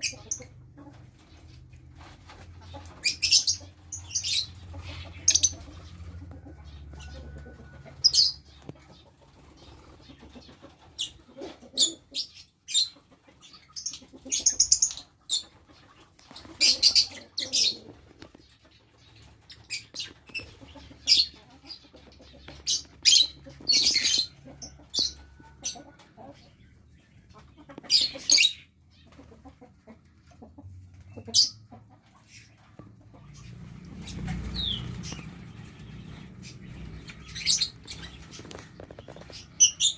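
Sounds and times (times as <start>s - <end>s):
birds shrill chirps: 2.8s - 26.3s, 27.8s - 29.1s, 33.2s - 39.9s
wings flapping: 14.8s - 18.5s, 33.3s - 39.9s.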